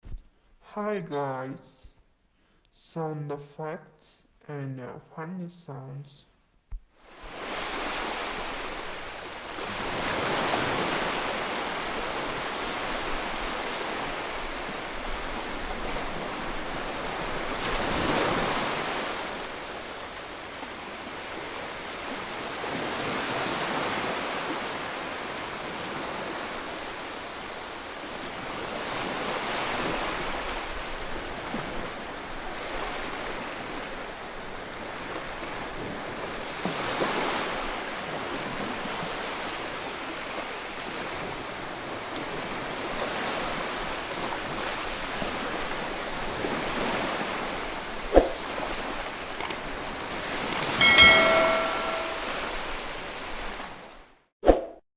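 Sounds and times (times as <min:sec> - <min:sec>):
ocean waves surf hissing: 0:07.0 - 0:31.1.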